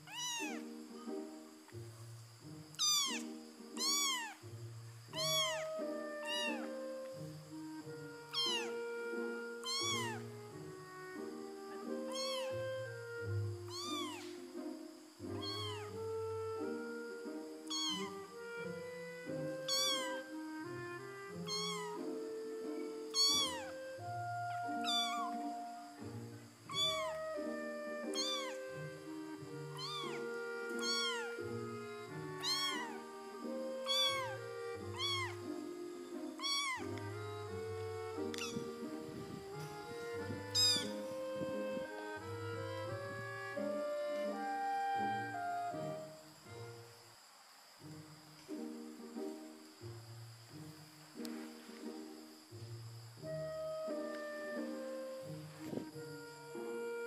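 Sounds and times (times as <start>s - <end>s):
background music with held notes: 0.0s - 57.0s
kittens mewing: 0.1s - 0.6s, 2.8s - 4.4s, 5.2s - 6.8s, 8.3s - 8.8s, 9.6s - 10.2s, 12.1s - 12.7s, 13.7s - 14.3s, 15.4s - 15.9s, 17.7s - 18.2s, 19.6s - 20.2s, 21.4s - 22.0s, 23.1s - 23.8s, 24.6s - 25.6s, 26.7s - 28.7s, 29.7s - 31.4s, 32.4s - 33.0s, 33.8s - 35.4s, 36.4s - 37.0s, 38.2s - 38.9s, 39.9s - 41.1s.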